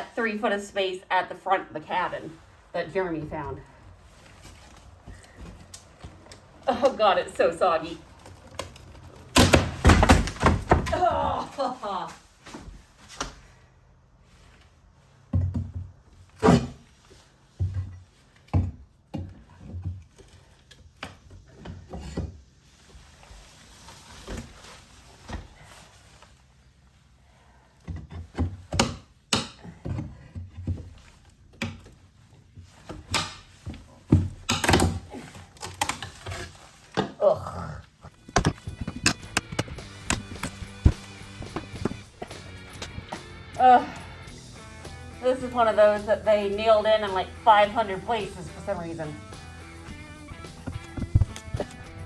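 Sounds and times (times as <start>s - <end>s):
wooden knocks and thuds: 9.4s - 11.2s, 38.1s - 43.2s, 50.6s - 51.8s.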